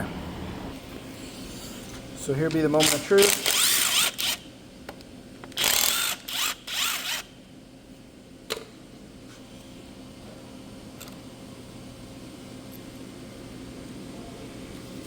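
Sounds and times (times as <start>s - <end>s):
ratchet wrench clicking: 2.8s - 4.4s, 5.6s - 7.2s.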